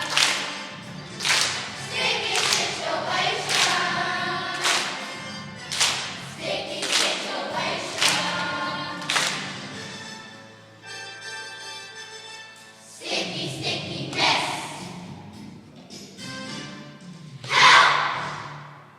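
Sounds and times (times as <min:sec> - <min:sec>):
sharp clap beat: 0:00.0 - 0:09.8
children's choir singing: 0:00.0 - 0:10.1, 0:12.9 - 0:15.1, 0:17.4 - 0:18.6.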